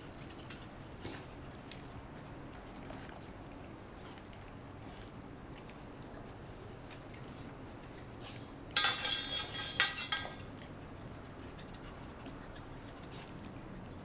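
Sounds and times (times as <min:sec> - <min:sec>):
metal clinking and clattering: 0:08.8 - 0:10.5.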